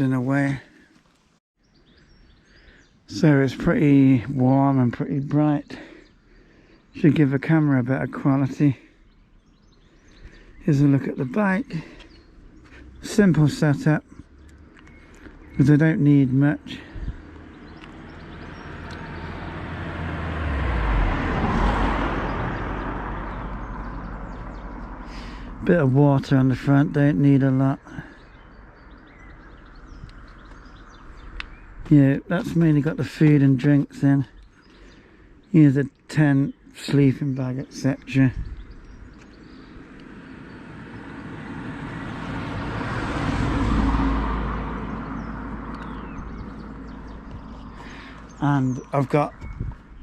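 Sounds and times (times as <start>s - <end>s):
road vehicle passing by: 11.8s - 25.9s, 37.7s - 50.0s.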